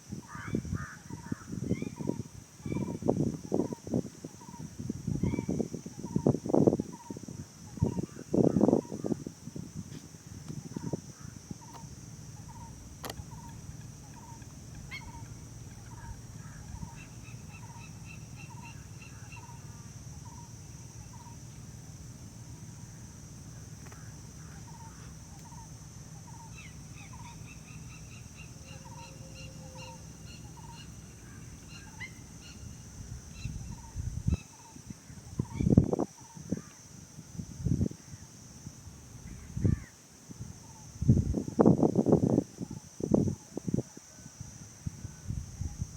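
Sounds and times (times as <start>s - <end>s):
low steady hum: 0.0s - 43.8s
high insect drone: 0.0s - 45.9s
birds calling: 10.3s - 21.5s, 22.8s - 34.8s.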